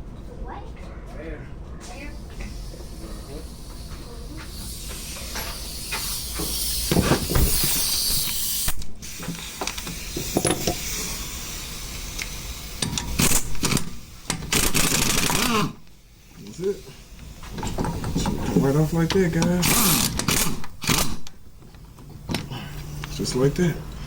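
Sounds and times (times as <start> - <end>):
compressed air hissing: 2.1 - 21.3, 22.0 - 24.0
mechanical rattling: 12.0 - 15.6, 17.5 - 24.0.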